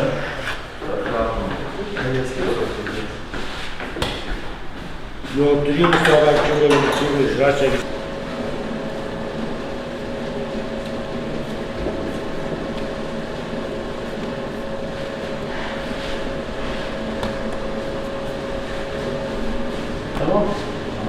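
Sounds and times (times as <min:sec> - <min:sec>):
machine hum: 0:04.4 - 0:21.0.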